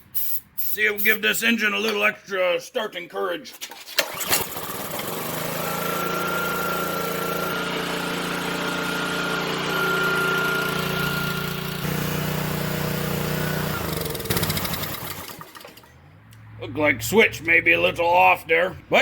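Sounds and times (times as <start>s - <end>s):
small engine running: 4.0s - 16.0s.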